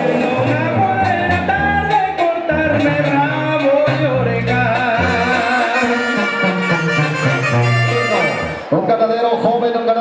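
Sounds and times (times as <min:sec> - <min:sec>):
held bass notes: 0:00.0 - 0:08.9
person singing vibrato melody: 0:03.3 - 0:08.6.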